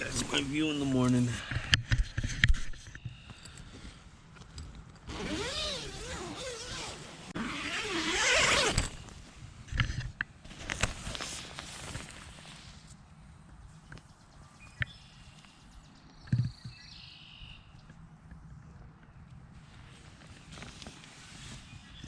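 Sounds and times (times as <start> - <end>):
tent zipper pulled open: 5.0 - 9.2, 9.8 - 12.7.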